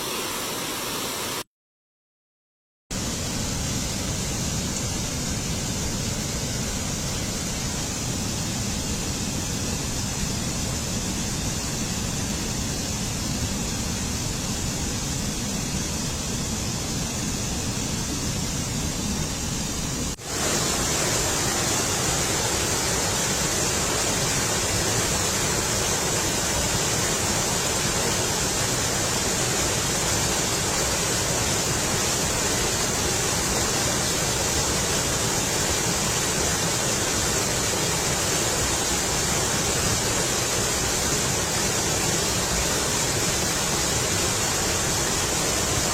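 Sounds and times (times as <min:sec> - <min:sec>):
waterfall rushing: 0:00.0 - 0:01.4, 0:15.8 - 0:45.9.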